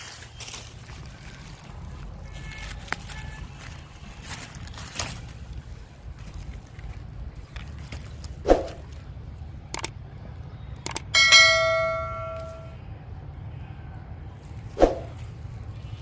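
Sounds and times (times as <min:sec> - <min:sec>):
steady low hum: 0:00.6 - 0:16.0
light clicks: 0:09.7 - 0:10.0, 0:10.8 - 0:11.1
ringing metallic strike: 0:11.2 - 0:12.8.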